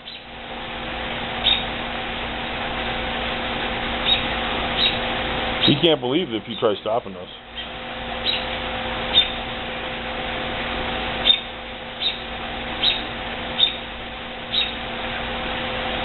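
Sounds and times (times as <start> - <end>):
mechanical hum: 0.0 - 16.0
bird chirping: 1.4 - 1.7, 11.2 - 12.2, 12.8 - 13.0, 13.6 - 13.8, 14.5 - 14.8.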